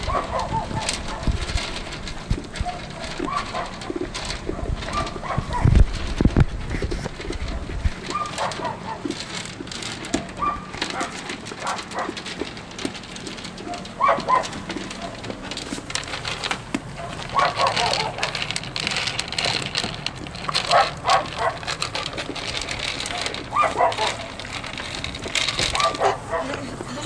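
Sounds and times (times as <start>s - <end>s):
dog barking: 0.0s - 1.3s, 4.6s - 5.6s, 8.1s - 9.0s, 10.4s - 12.2s, 13.7s - 15.2s, 17.0s - 18.4s, 20.7s - 21.6s, 23.5s - 24.3s, 25.7s - 26.6s.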